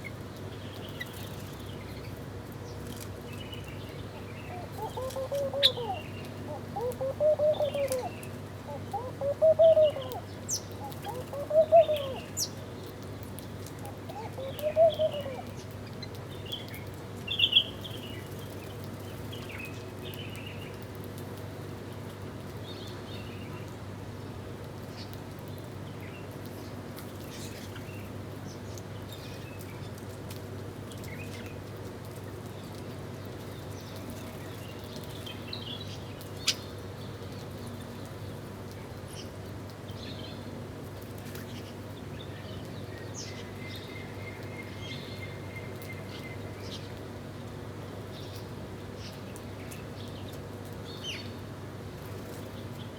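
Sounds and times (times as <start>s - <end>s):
birds chirping and calling: 3.6s - 12.6s, 13.8s - 15.7s.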